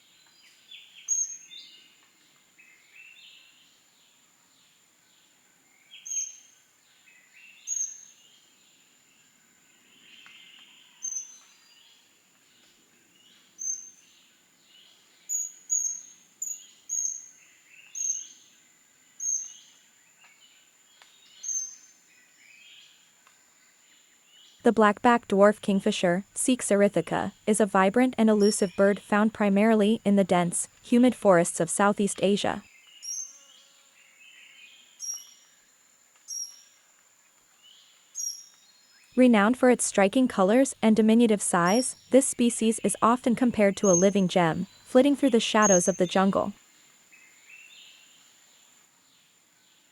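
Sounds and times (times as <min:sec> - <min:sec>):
faint high-pitched tone: 0:24.7 - 0:32.6, 0:39.2 - 0:46.5.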